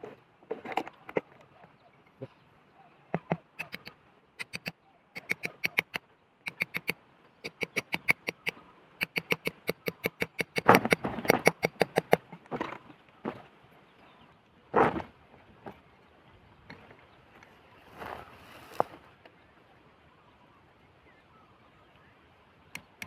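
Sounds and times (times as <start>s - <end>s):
doves making staccato notes: 3.2s - 12.4s
rough rustling: 17.8s - 19.1s.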